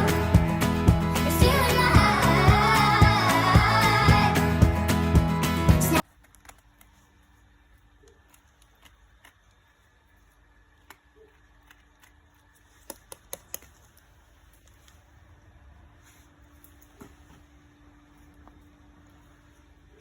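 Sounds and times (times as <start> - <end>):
faint steady hum: 6.0 - 20.0.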